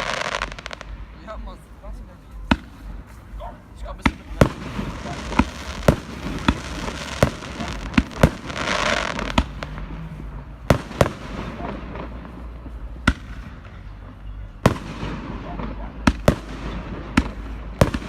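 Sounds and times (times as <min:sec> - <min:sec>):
firework hiss: 0:00.0 - 0:01.3, 0:02.6 - 0:13.6.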